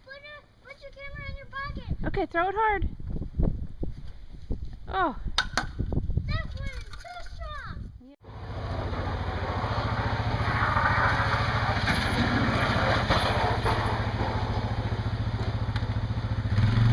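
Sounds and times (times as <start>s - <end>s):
engine running steadily: 8.2s - 16.9s
rushing noise: 8.2s - 16.9s.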